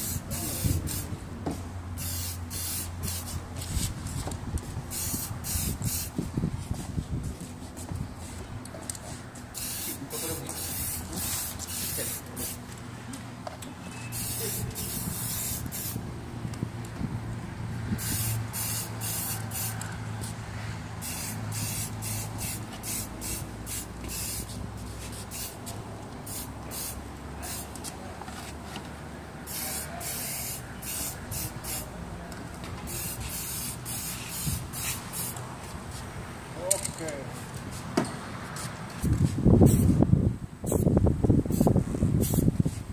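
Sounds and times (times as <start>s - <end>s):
spray paint hissing: 0.0s - 1.2s, 2.0s - 6.8s, 9.4s - 12.6s, 14.1s - 16.0s, 17.9s - 20.4s, 21.0s - 27.9s, 29.4s - 31.9s, 32.8s - 36.0s, 39.0s - 40.0s, 40.6s - 42.9s.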